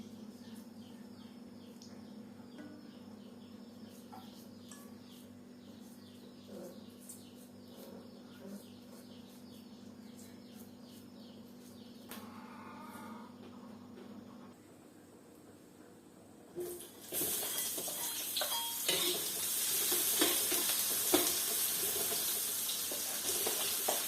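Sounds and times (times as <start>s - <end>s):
steady low hum: 0.0s - 16.7s.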